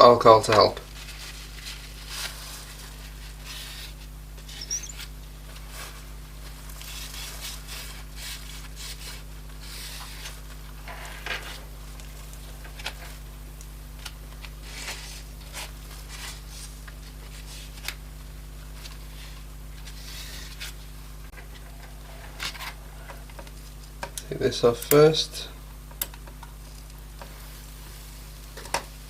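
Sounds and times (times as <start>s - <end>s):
steady low hum: 0.0s - 29.0s
cloth rubbing on glass: 0.9s - 5.2s.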